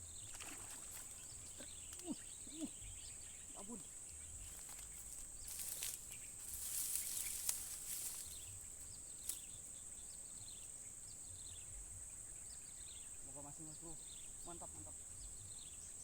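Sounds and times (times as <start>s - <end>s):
faint bird chirps: 0.0s - 16.0s
insects droning: 0.0s - 16.0s
rustling hiss: 0.5s - 10.9s.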